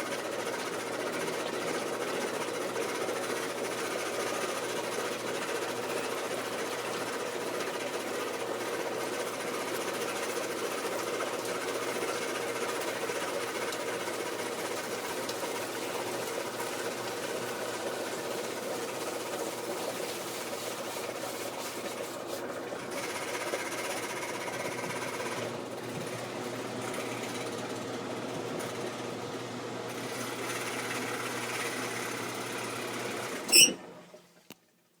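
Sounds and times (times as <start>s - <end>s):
washing machine running: 0.0s - 34.2s.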